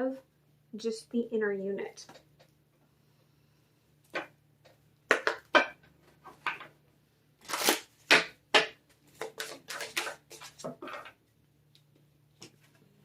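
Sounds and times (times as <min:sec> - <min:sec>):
cards being shuffled: 0:07.4 - 0:08.1, 0:09.1 - 0:10.8.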